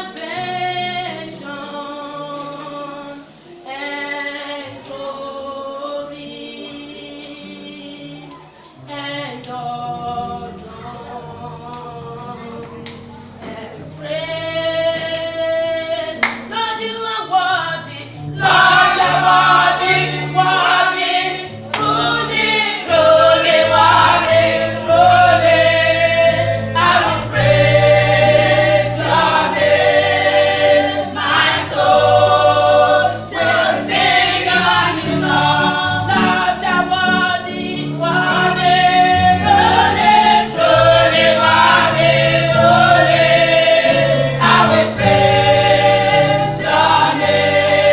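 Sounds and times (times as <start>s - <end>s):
choir singing gospel: 0.0s - 47.9s.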